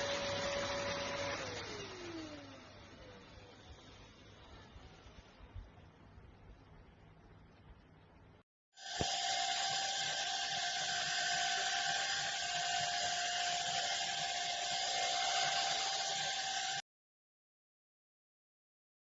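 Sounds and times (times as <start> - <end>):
handheld vacuum cleaner whine: 0.0 - 4.2, 8.8 - 16.8.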